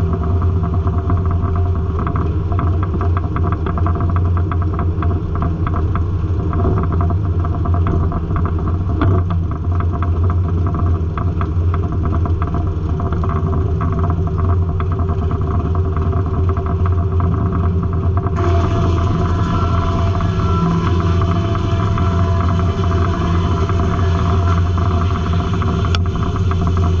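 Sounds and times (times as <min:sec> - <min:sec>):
high steady whine: 0:18.2 - 0:27.0
sawmill machine drone: 0:18.4 - 0:27.0.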